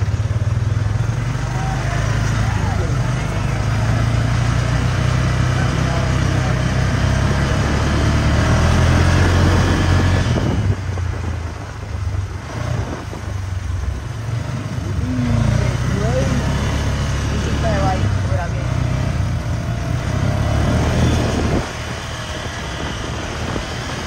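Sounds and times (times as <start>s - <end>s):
motor vehicle engine rumbling: 0.0s - 24.0s.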